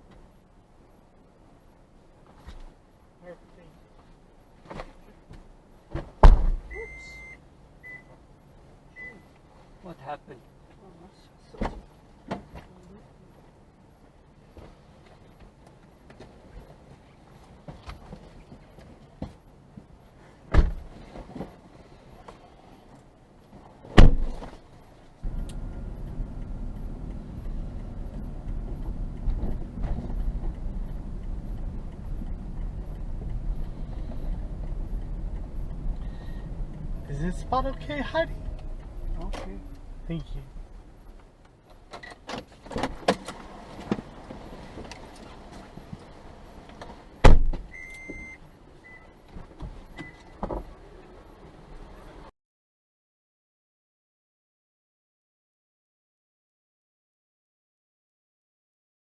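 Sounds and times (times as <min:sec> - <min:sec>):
car driving low rumble: 0:05.0 - 0:09.2, 0:24.0 - 0:52.3
car door shutting: 0:05.9 - 0:07.1, 0:20.5 - 0:21.5, 0:23.9 - 0:24.6, 0:25.2 - 0:40.8, 0:41.9 - 0:46.0, 0:46.7 - 0:48.4, 0:49.3 - 0:50.8
soft thump: 0:06.0 - 0:06.8, 0:20.5 - 0:20.9, 0:28.7 - 0:30.9
electronic beep: 0:06.7 - 0:08.1.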